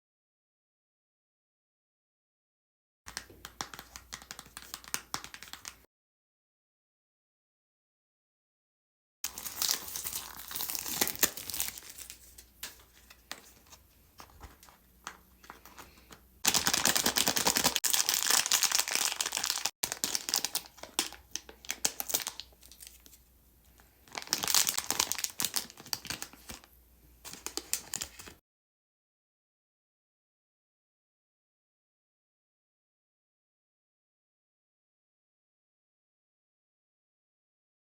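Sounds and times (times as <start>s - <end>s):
plastic packaging crinkling and tearing: 9.3s - 14.8s, 15.4s - 23.2s, 24.1s - 26.7s, 27.3s - 28.4s.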